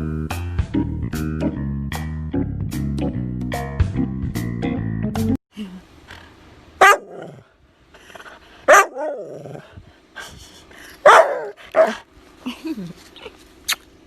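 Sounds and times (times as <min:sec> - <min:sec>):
dog barking: 0:06.8 - 0:07.4, 0:08.7 - 0:09.6, 0:11.0 - 0:12.0.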